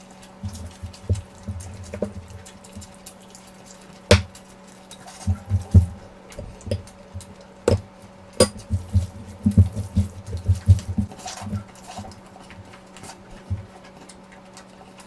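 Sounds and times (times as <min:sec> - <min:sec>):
wet chewing and mouth smacks: 0:00.0 - 0:07.4
faint steady hum: 0:00.0 - 0:15.0.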